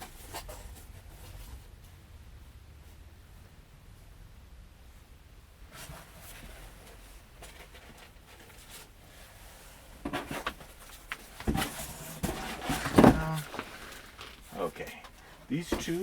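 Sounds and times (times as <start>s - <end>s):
cardboard boxes rustling: 5.7s - 16.0s
boxes knocking and clattering: 10.0s - 16.0s.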